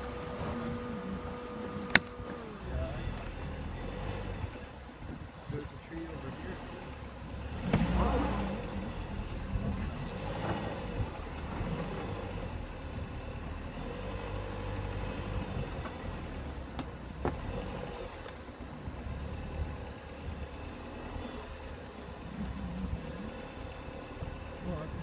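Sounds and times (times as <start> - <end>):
car engine running at low speed: 0.0 - 25.0
car thumping over bumps: 7.0 - 13.6, 15.3 - 25.0.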